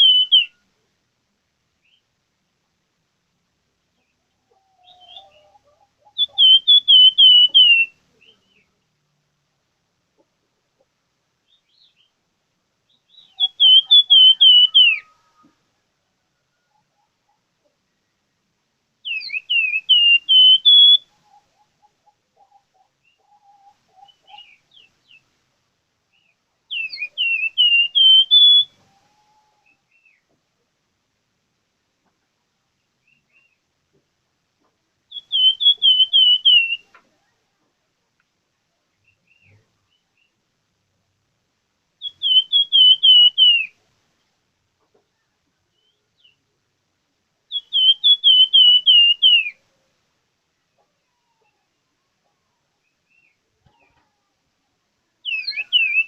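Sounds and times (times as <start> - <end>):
songbird singing slurred whistles: 0.0 - 0.7, 4.7 - 8.7, 12.9 - 15.5, 19.0 - 21.4, 26.2 - 28.8, 35.1 - 37.0, 42.0 - 43.8, 47.5 - 49.6, 55.2 - 56.0.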